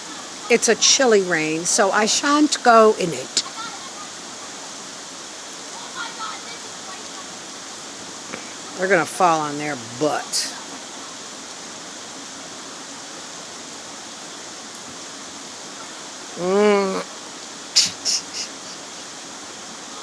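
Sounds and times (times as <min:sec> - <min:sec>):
falling rain: 0:00.0 - 0:20.0
flooded creek rushing: 0:00.0 - 0:20.0
person calling out: 0:16.4 - 0:17.1, 0:17.8 - 0:18.7.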